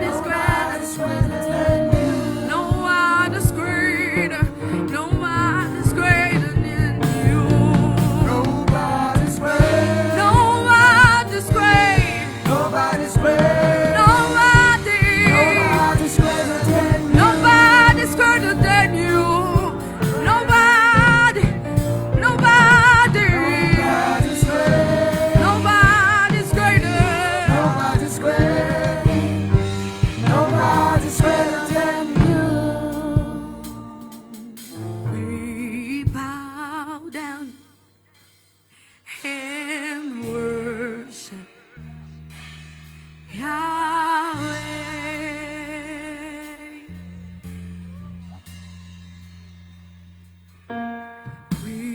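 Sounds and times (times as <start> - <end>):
band with steady beat and bass: 0.0 - 34.8, 42.2 - 43.4, 44.4 - 50.7
person singing with vibrato: 0.0 - 37.6, 39.1 - 41.9.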